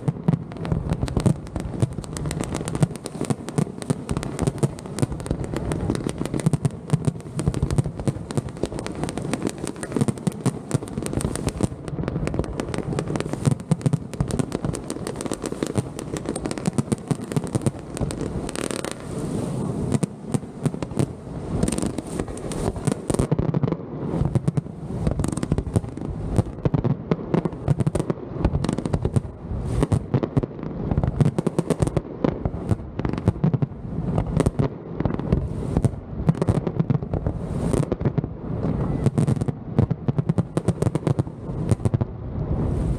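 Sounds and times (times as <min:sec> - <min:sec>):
fireworks bangs and crackles: 0:00.0 - 0:42.9.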